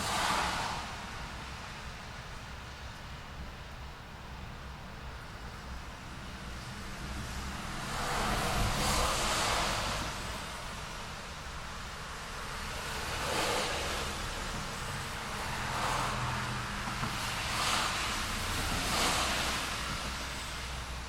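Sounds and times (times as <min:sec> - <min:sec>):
car passing: 0:00.0 - 0:01.8, 0:06.3 - 0:21.0
traffic rumble: 0:00.0 - 0:21.0
vehicle passing: 0:07.2 - 0:10.6, 0:12.8 - 0:20.7.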